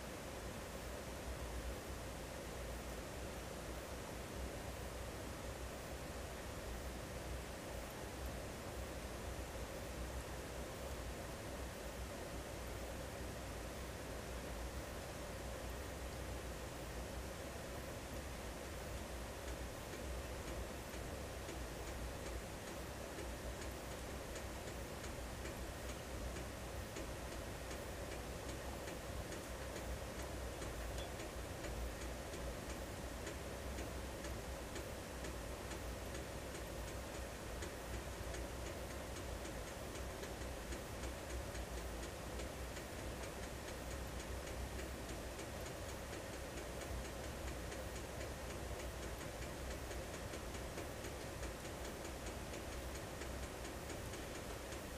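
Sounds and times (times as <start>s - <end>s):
faint regular ticking: 18.1s - 54.9s.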